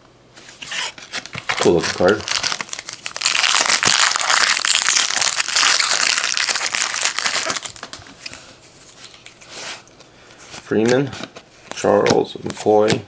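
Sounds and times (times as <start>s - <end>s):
foil wrapper crinkling: 0.9s - 9.5s.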